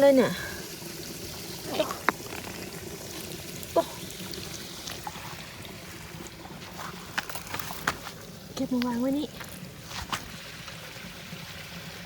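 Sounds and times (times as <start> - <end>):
water trickling: 0.0 - 12.0
splashes and knocks in wet mud: 6.5 - 10.8.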